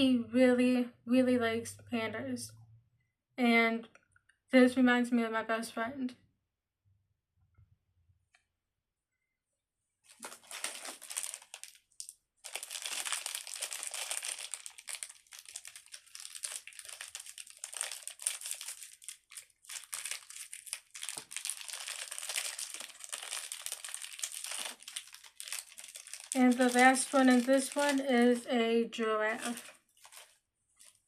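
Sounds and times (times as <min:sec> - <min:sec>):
packets tearing open: 0:10.1 - 0:28.0, 0:29.4 - 0:31.0
packaging crinkling: 0:10.1 - 0:28.4, 0:29.3 - 0:31.0.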